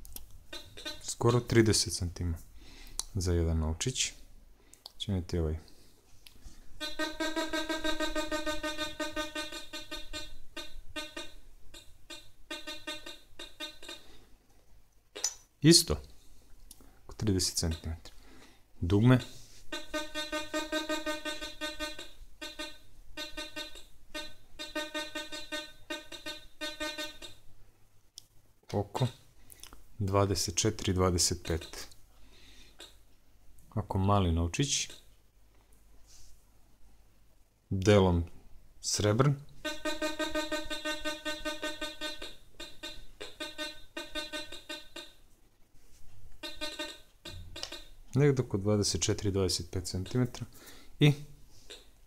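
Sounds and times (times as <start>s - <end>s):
metal detector buzzy tones: 39.7s - 45.1s.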